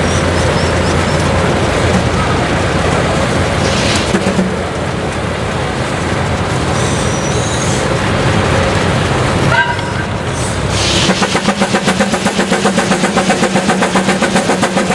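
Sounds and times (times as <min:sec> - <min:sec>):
steam engine exhaust barking: 0:09.4 - 0:14.9.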